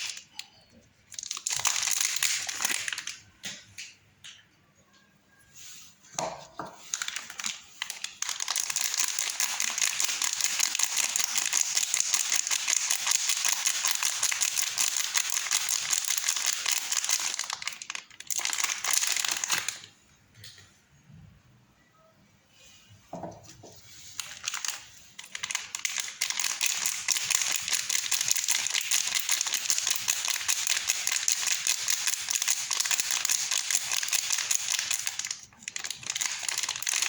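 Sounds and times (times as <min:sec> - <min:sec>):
soap wrapper crinkling and tearing: 0:00.0 - 0:03.2, 0:07.0 - 0:19.9, 0:24.2 - 0:37.0.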